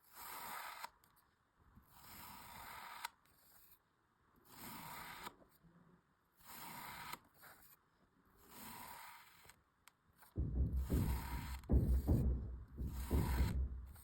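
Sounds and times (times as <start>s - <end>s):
knife scraping through sand: 4.4s - 5.4s, 8.4s - 9.4s.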